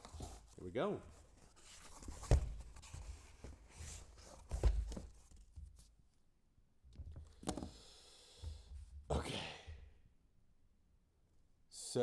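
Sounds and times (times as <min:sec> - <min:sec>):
cardboard boxes knocking and rustling: 0:01.9 - 0:05.8.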